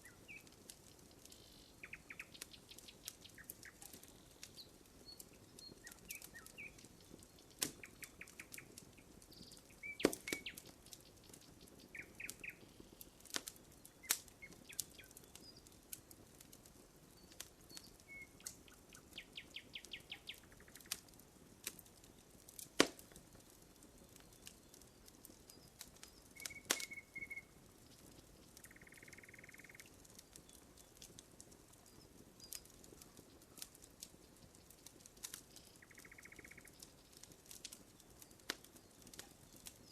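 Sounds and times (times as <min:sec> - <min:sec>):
wood fire crackling and popping: 0:00.0 - 0:39.9
birds chirping and trilling: 0:01.3 - 0:07.2.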